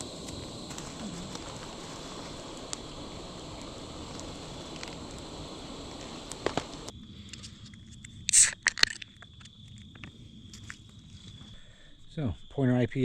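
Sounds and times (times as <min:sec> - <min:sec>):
campfire crackling: 0:00.0 - 0:11.6
crickets chirping: 0:00.0 - 0:13.0
drink can cracked open: 0:07.4 - 0:09.4.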